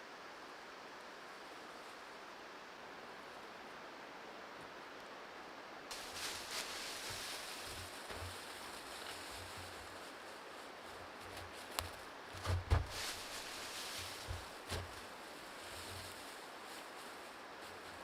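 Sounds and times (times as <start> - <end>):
fern fronds and branches rustling: 1.2 - 2.4, 5.9 - 18.0
branches snapping: 11.2 - 15.1.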